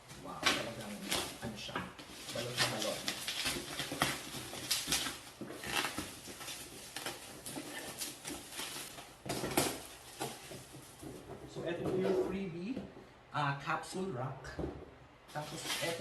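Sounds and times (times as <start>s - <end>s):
packaging wrap tearing and crinkling: 0.4s - 10.5s, 15.4s - 16.0s.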